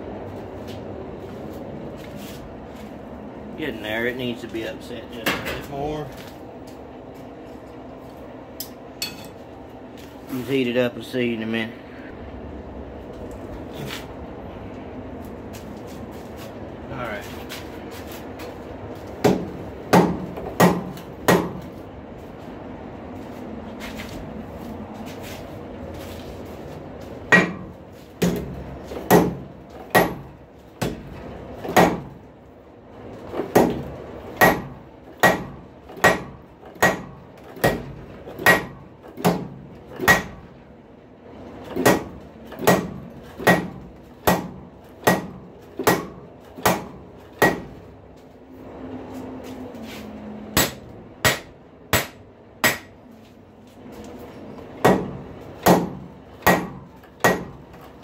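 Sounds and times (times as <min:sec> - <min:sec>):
hammer striking metal on anvil: 0:08.6 - 0:09.4, 0:19.2 - 0:21.6, 0:27.3 - 0:28.5, 0:29.1 - 0:31.0, 0:34.4 - 0:40.4, 0:41.8 - 0:47.7, 0:50.6 - 0:53.0, 0:54.8 - 0:57.6.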